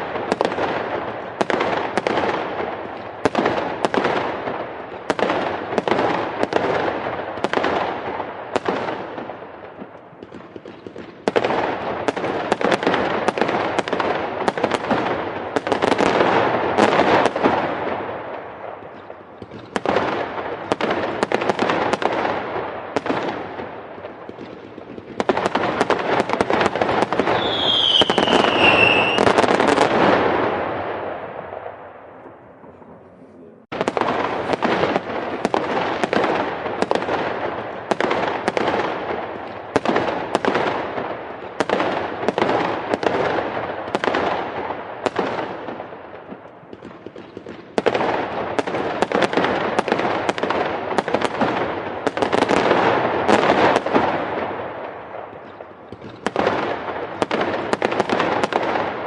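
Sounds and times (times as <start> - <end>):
fireworks banging and crackling: 0.0 - 59.0
falling firework whistle: 27.2 - 29.8.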